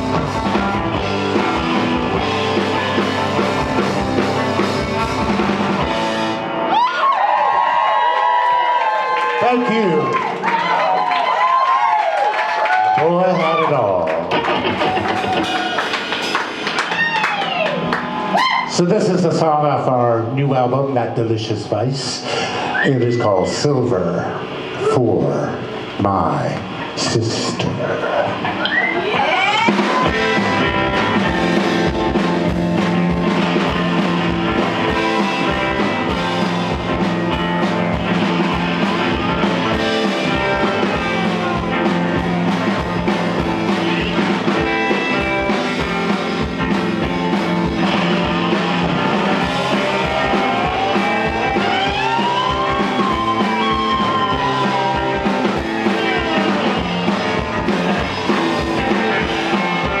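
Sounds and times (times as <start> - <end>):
bending electric guitar lead: 0.0 - 7.1, 13.5 - 21.8, 22.4 - 60.0
live rock band playing: 0.0 - 8.2, 13.3 - 20.8, 28.1 - 60.0.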